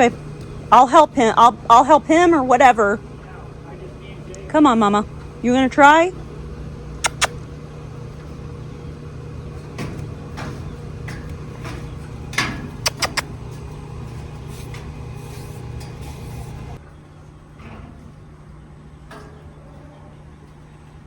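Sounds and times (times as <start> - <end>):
low machine hum: 0.0 - 21.0
knocks and clatters: 9.4 - 13.0.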